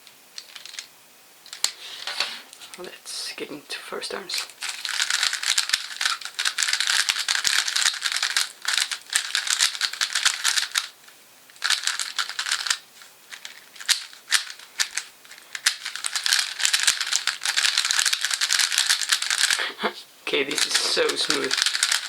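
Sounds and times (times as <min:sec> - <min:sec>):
puzzle cube plastic clicks: 0:00.0 - 0:00.9, 0:04.4 - 0:19.6, 0:20.5 - 0:22.0.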